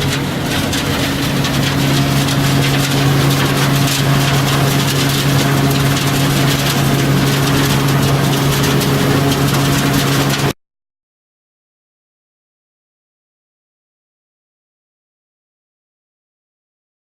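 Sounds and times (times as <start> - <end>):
dense rattling noise: 0.0 - 10.6
engine hum: 0.0 - 10.6.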